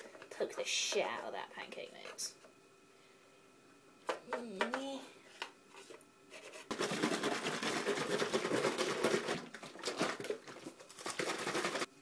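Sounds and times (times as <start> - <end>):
batter shaken in plastic bottle: 6.7 - 11.9.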